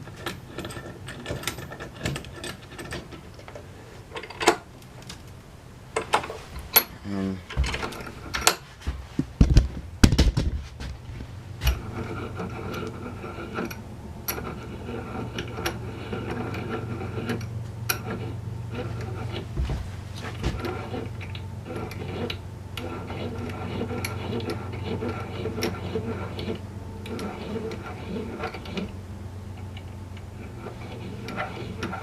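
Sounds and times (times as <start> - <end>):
metal vise knocks and clicks: 0.0 - 3.6
steady low hum: 0.0 - 32.0.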